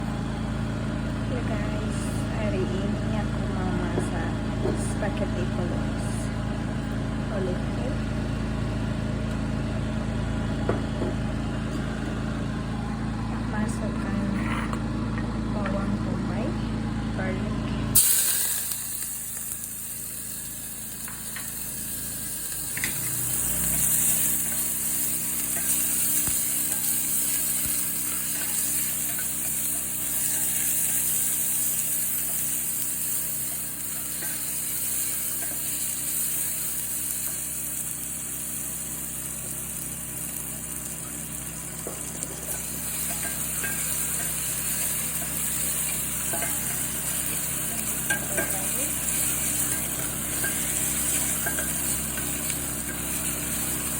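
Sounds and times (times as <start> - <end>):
steady low hum: 0.0 - 53.9
onion sizzling in a frying pan: 17.9 - 53.9.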